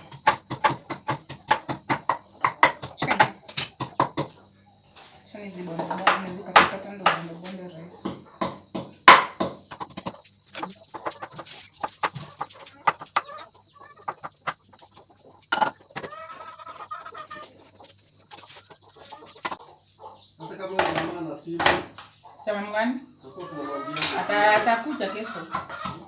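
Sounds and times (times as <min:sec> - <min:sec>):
chickens clucking: 0:00.0 - 0:26.0
chicken drawn-out call: 0:09.8 - 0:20.7, 0:23.2 - 0:26.0.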